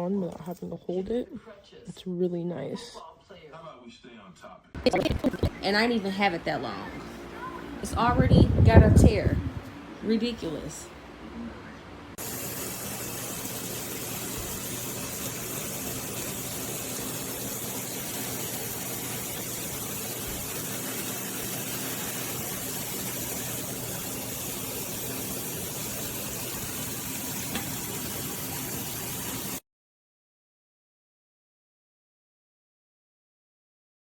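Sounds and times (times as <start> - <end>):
steady hiss: 12.2 - 29.6.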